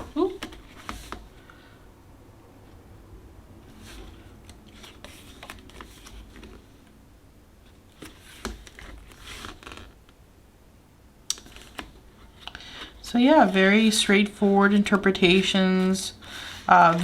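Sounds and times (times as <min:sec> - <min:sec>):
pages turning: 0:03.7 - 0:06.9, 0:07.9 - 0:10.0, 0:11.4 - 0:13.9.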